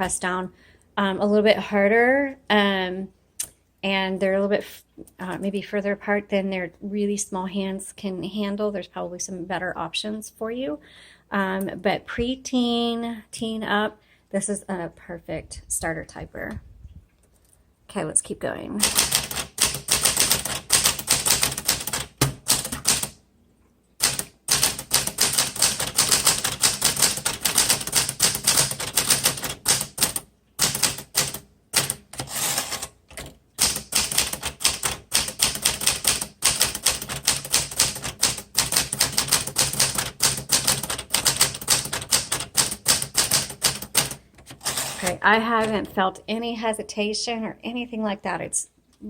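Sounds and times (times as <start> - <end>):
manual typewriter typing: 18.8 - 23.2, 24.0 - 45.9.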